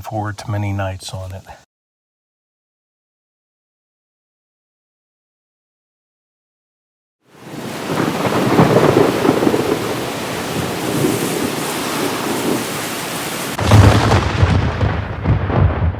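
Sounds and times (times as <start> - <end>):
heavy rain: 7.3 - 15.9
thunder rumbling: 7.4 - 15.9.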